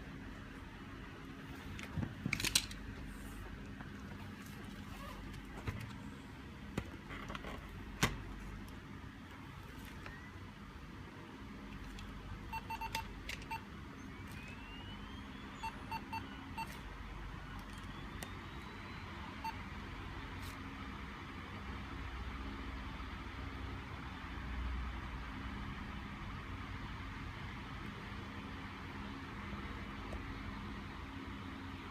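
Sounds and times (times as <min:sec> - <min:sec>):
low hum and hiss: 0:00.0 - 0:31.9
short electronic beeps: 0:12.5 - 0:16.8
rising whistling glides: 0:14.1 - 0:15.6.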